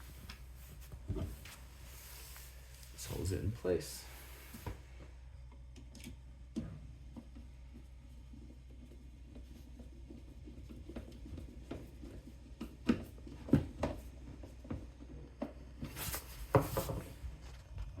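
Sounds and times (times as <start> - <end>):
low steady hum: 0.0 - 18.0
knocks and clicks of objects handled: 5.7 - 15.6.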